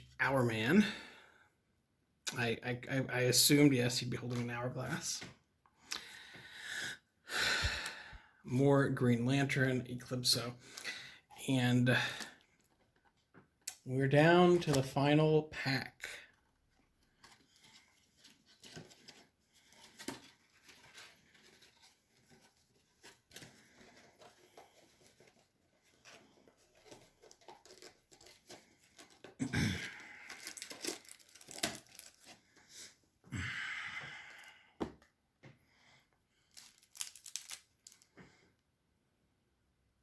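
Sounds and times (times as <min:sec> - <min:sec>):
wrapper tearing and crinkling: 0:26.8 - 0:32.4, 0:36.4 - 0:38.1.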